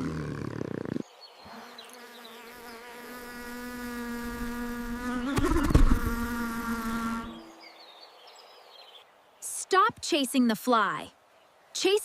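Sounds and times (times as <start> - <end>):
housefly buzzing: 0.0 - 7.6.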